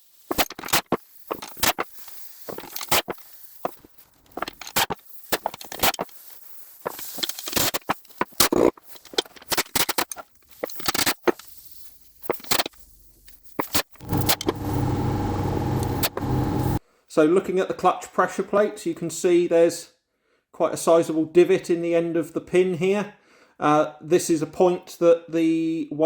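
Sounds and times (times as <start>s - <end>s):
steady motor hum: 14.0s - 16.8s.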